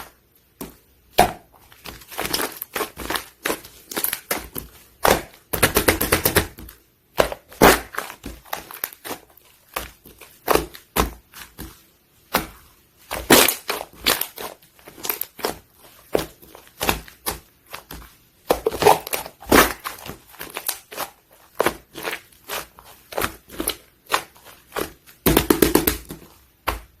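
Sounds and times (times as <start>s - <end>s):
slime squished by hand: 1.1s - 27.0s.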